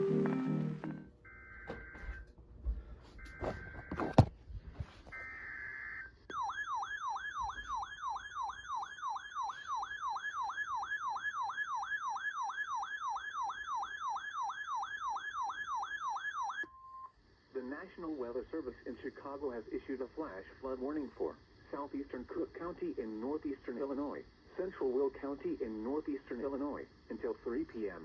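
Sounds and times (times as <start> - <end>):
electronic siren sweeping down: 5.1 - 16.7
brief steady beep: 16.6 - 17.1.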